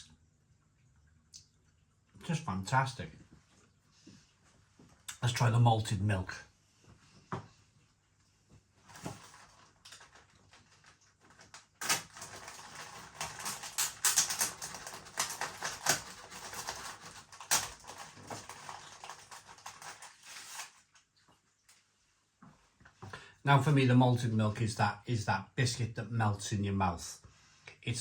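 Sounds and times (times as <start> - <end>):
plastic packaging crinkling: 8.8 - 21.1.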